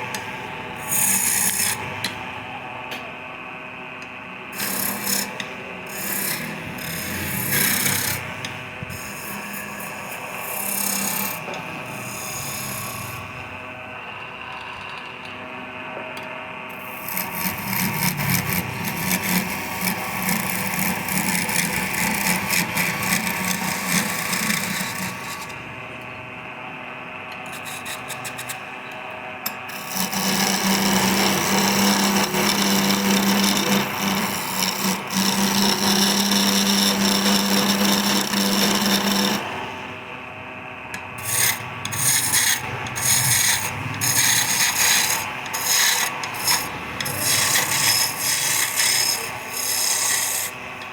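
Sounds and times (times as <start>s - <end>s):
tool scraping spinning wood: 0.0s - 2.6s, 4.5s - 13.5s, 16.7s - 25.7s, 27.3s - 39.8s, 41.0s - 50.9s
wood lathe humming: 0.0s - 50.9s.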